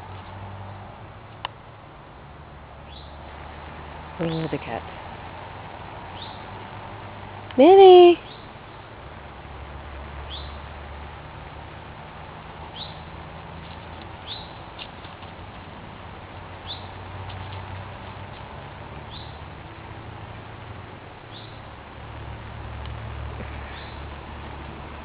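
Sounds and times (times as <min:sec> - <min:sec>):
small bird chirping: 0:12.7 - 0:13.0, 0:14.2 - 0:15.0, 0:16.6 - 0:17.0.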